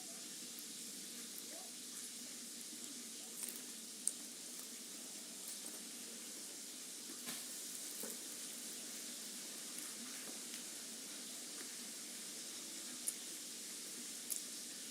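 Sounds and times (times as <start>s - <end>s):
food sizzling in a frying pan: 0.0s - 14.9s.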